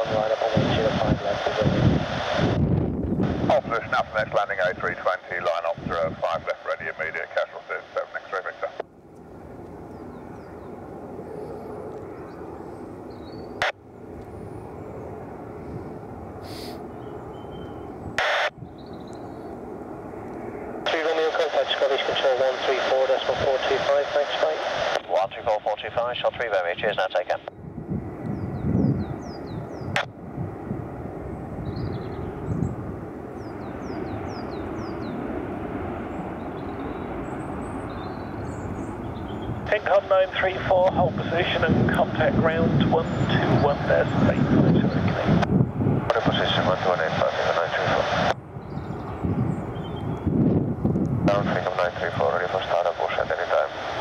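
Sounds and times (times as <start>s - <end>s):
jet engines rumbling: 0.0s - 54.0s
radio squelch bursts: 3.3s - 8.8s, 18.2s - 18.5s, 20.9s - 27.5s, 39.7s - 45.5s, 46.1s - 48.4s, 51.3s - 54.0s
bird chirping: 9.8s - 10.8s, 12.1s - 13.6s, 16.5s - 19.6s, 31.6s - 32.8s, 33.4s - 35.3s, 36.1s - 39.6s, 48.6s - 50.3s
faint bird chirps: 16.5s - 19.6s.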